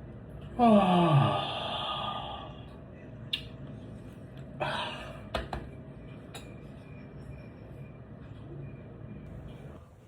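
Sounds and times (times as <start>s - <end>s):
person yawning: 0.6s - 2.5s.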